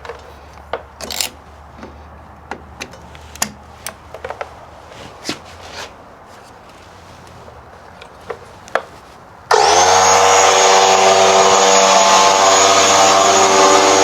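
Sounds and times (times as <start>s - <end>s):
tools and parts clicking: 1.0s - 1.4s.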